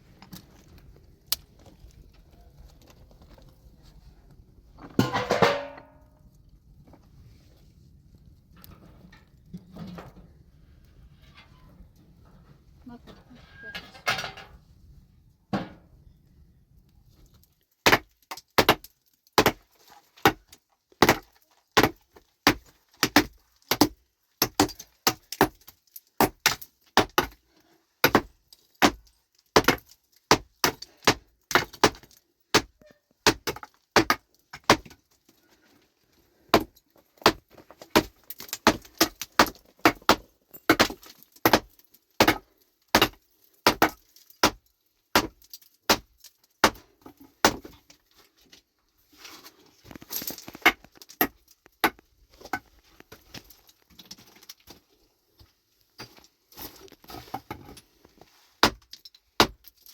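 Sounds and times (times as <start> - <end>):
pickaxe striking rock: 17.8 - 19.6, 21.0 - 25.6, 28.0 - 29.0, 29.6 - 34.9, 36.5 - 44.6, 45.2 - 46.8, 58.6 - 59.7.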